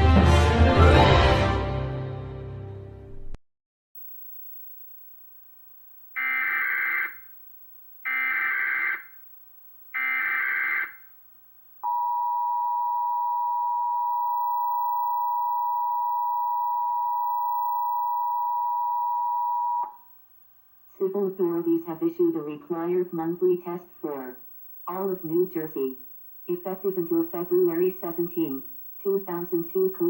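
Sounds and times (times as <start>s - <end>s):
two-tone alert signal: 6.2s - 7.2s
warbling data tone bursts: 6.2s - 7.3s, 8.1s - 9.1s, 10.0s - 11.0s.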